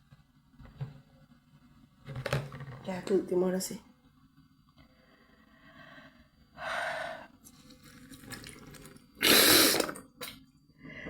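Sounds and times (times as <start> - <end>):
person blowing nose: 9.2 - 10.0.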